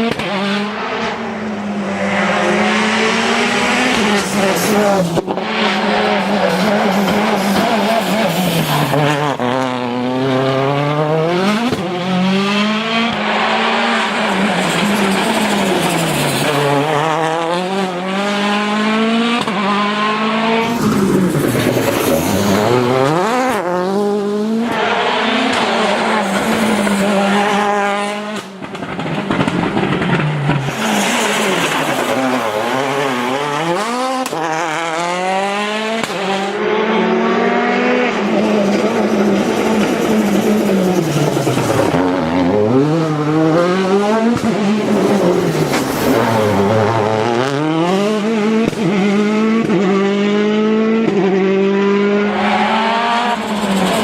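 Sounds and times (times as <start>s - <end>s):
rally car engine accelerating: 0.0s - 54.0s.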